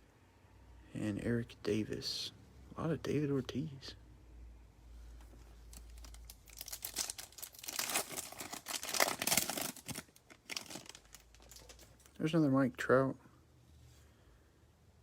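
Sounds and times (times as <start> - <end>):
foil wrapper crinkling and tearing: 5.6 - 12.1.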